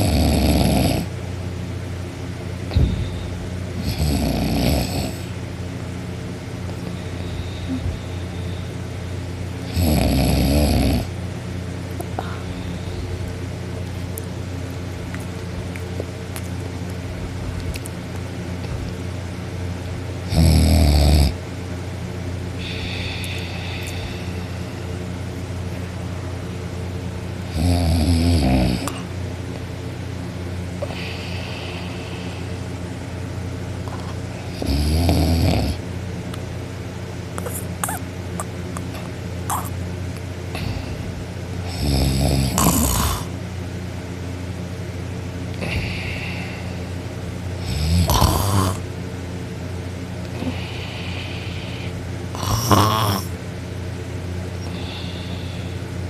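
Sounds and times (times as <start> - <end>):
woman snoring: 0.0 - 1.1, 3.8 - 5.3, 9.6 - 11.1, 20.3 - 21.4, 22.6 - 24.7, 27.5 - 29.1, 30.8 - 32.5, 34.4 - 35.8, 37.4 - 38.0, 39.5 - 39.7, 41.6 - 43.3, 45.6 - 46.8, 47.6 - 48.8, 50.3 - 53.3, 54.6 - 55.7
steady low hum: 0.0 - 56.0.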